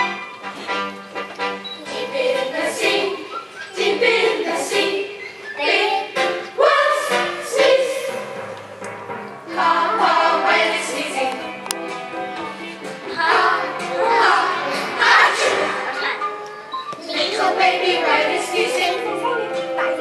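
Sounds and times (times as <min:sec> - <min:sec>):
accompanying music: 0:00.0 - 0:20.0
child singing: 0:17.0 - 0:20.0.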